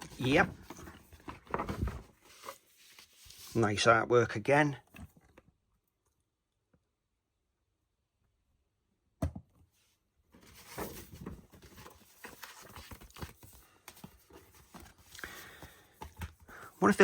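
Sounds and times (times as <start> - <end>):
paper poster rustling: 0.0 - 3.9, 10.4 - 17.0.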